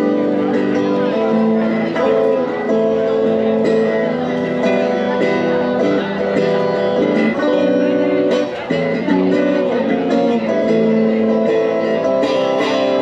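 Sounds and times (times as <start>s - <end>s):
guitar chords plucked and strummed: 0.0s - 13.0s.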